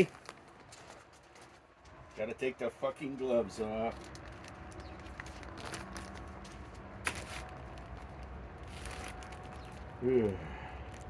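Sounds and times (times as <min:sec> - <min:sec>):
low outdoor rumble: 0:01.6 - 0:11.0
gloves rustling: 0:03.9 - 0:10.0.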